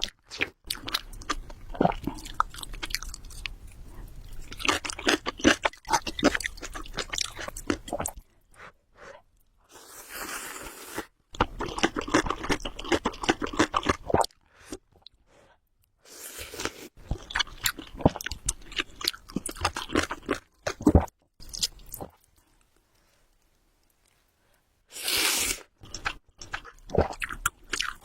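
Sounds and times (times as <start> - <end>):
wet chewing and smacking: 0.0 - 8.2, 11.4 - 15.1, 17.0 - 22.7.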